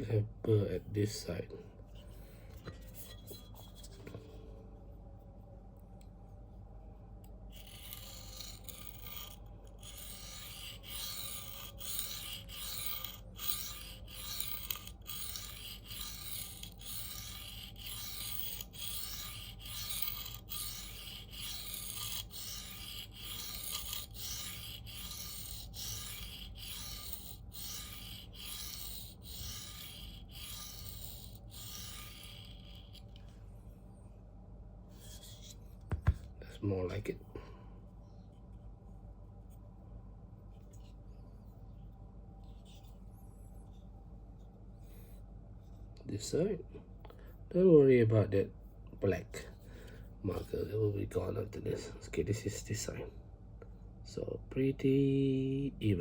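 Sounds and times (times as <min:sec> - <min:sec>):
knife rasping on sharpening plate: 0:07.5 - 0:33.0.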